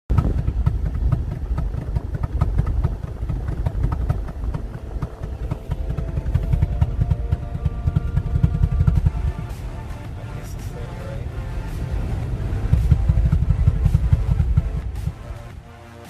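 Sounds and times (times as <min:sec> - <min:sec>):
car engine uneven rumble: 0:00.0 - 0:16.0
sharp knocks: 0:00.1 - 0:09.7
steady tones: 0:00.1 - 0:16.0.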